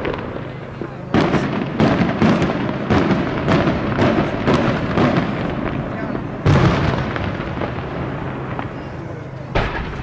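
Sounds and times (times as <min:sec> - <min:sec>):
deep firework boom: 0:00.0 - 0:08.9, 0:09.6 - 0:10.0
fireworks shells bursting: 0:09.6 - 0:10.0.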